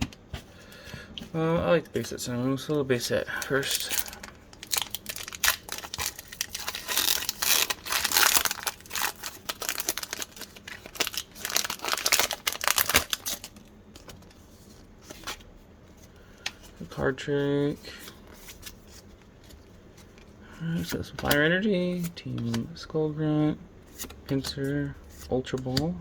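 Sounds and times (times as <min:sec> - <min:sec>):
foil pack tearing and crinkling: 0:03.4 - 0:14.3.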